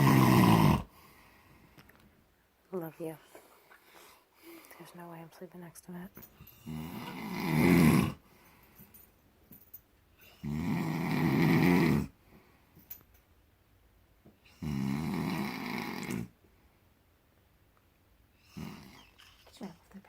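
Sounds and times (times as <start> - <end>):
man snoring: 0.0 - 1.0, 6.6 - 8.2, 10.4 - 12.2, 14.5 - 16.3, 18.4 - 19.2.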